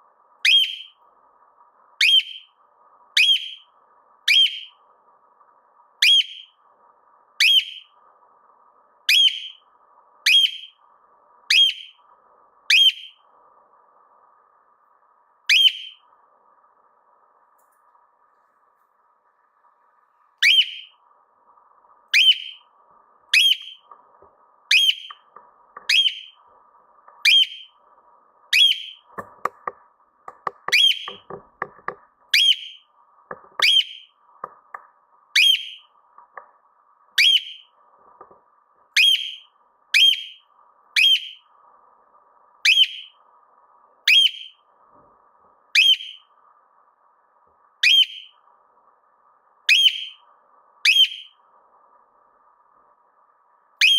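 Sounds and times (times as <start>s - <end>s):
cockatiel calling: 0.4s - 0.9s, 2.0s - 2.5s, 3.2s - 3.6s, 4.3s - 4.7s, 6.0s - 6.5s, 7.4s - 7.9s, 9.1s - 9.6s, 10.3s - 10.8s, 11.5s - 12.0s, 12.7s - 13.2s, 15.5s - 16.0s, 20.4s - 21.0s, 22.1s - 22.6s, 23.3s - 23.8s, 24.7s - 25.2s, 25.8s - 26.4s, 27.2s - 27.7s, 28.5s - 29.0s, 30.4s - 31.4s, 32.3s - 32.8s, 33.6s - 34.1s, 35.4s - 35.8s, 37.2s - 37.7s, 39.0s - 40.4s, 41.0s - 41.4s, 42.6s - 43.1s, 44.1s - 44.5s, 45.8s - 46.2s, 47.8s - 48.3s, 49.7s - 50.2s, 50.8s - 51.4s
clicks or taps: 29.1s - 32.1s, 33.3s - 33.6s, 34.4s - 35.0s, 36.2s - 36.6s.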